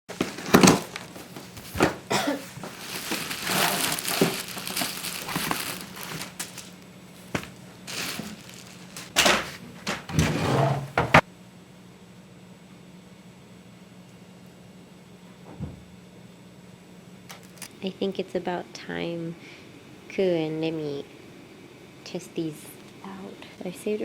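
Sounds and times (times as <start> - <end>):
packaging crinkling: 0.1 - 9.6.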